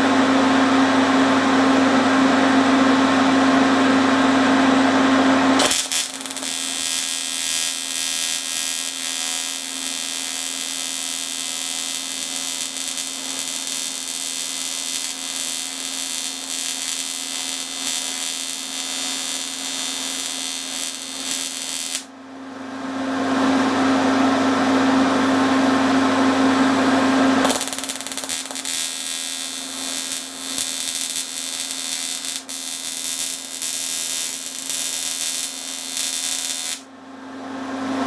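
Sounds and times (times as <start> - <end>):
welding arc hissing buzz: 5.6 - 22.1, 27.4 - 36.9.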